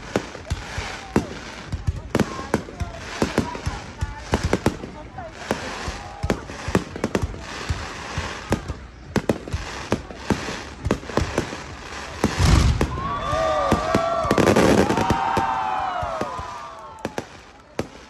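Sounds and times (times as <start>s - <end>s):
fireworks cracking and banging: 0.0s - 18.0s
fireworks whistling: 0.0s - 18.0s
heavy firework boom: 12.1s - 15.6s.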